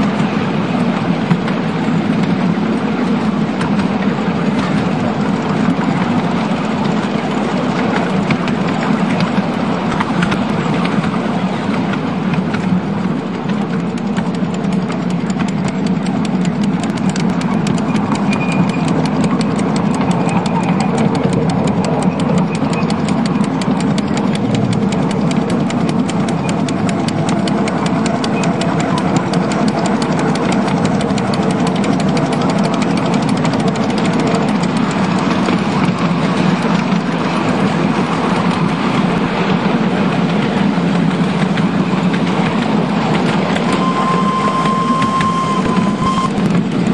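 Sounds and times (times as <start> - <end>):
miniature steam train running: 0.0 - 46.9.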